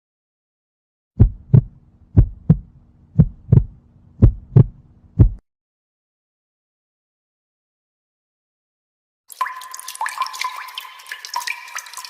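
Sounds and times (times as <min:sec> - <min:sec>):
heartbeat thumps: 0:01.2 - 0:05.4.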